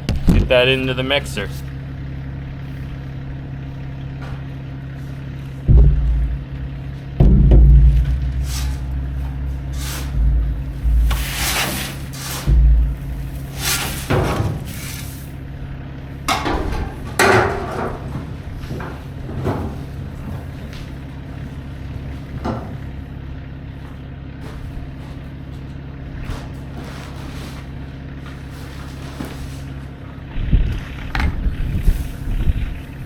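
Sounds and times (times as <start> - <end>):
tractor engine idling: 0.0 - 33.0
corn shovelled into bucket: 8.3 - 15.4, 26.3 - 29.9.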